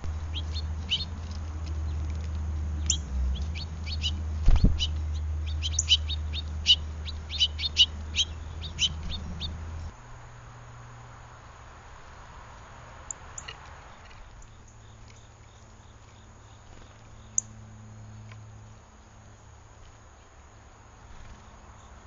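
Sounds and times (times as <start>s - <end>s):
birds chirping: 0.0s - 10.0s
low thump: 4.4s - 4.8s.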